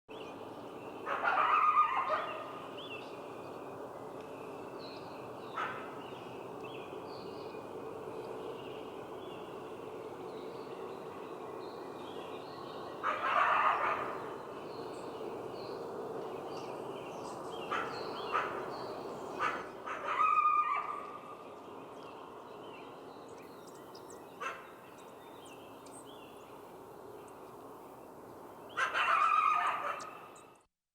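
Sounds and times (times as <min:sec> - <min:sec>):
birds chirping: 0:00.1 - 0:30.7
coyote calling: 0:01.0 - 0:02.9, 0:05.5 - 0:06.0, 0:13.0 - 0:14.9, 0:17.6 - 0:21.2, 0:28.7 - 0:30.4.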